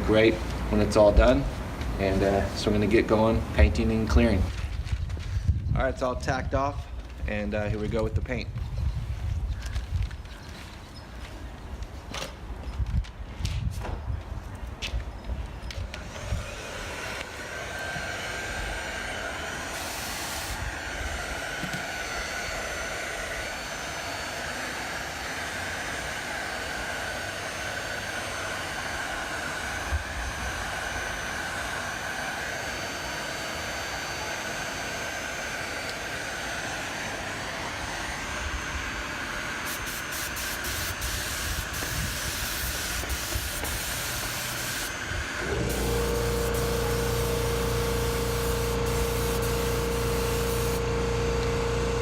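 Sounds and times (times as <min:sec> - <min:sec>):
paint spray gun hissing: 0:16.7 - 0:22.8, 0:39.6 - 0:51.1.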